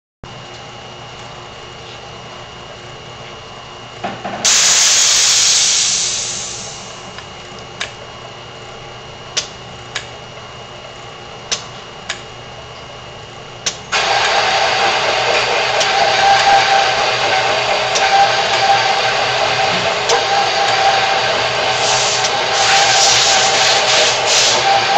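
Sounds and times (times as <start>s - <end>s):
compressed air hiss: 4.5s - 6.9s, 21.7s - 24.9s
drill cutter running with whine: 13.9s - 24.9s.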